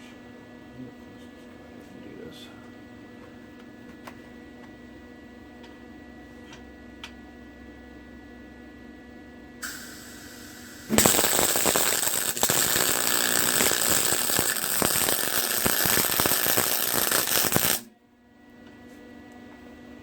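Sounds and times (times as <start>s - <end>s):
short hiss: 9.6s - 11.8s
welding arc crackling: 9.6s - 17.9s.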